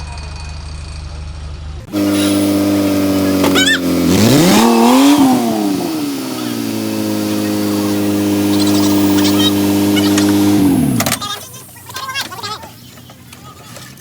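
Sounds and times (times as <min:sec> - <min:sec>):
engine running and revving: 0:01.8 - 0:11.4.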